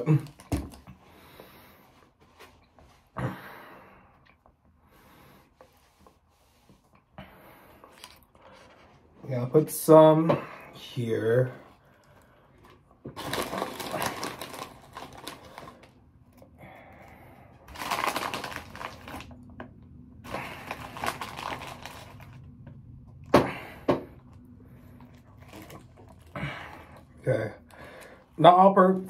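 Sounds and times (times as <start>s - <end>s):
crunchy potato chip bag: 13.2s - 16.0s, 17.5s - 19.4s, 20.3s - 22.5s.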